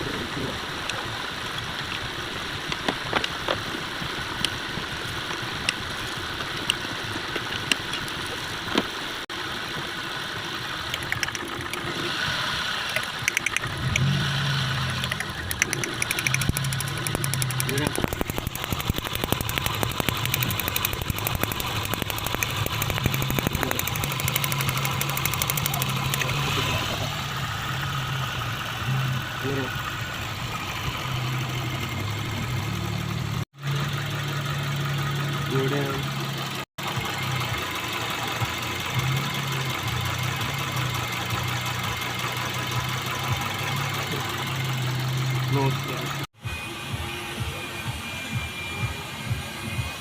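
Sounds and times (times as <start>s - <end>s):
car engine idling: 0.0s - 46.3s
fast ticking clatter: 10.8s - 11.9s, 12.9s - 13.7s, 14.9s - 26.5s.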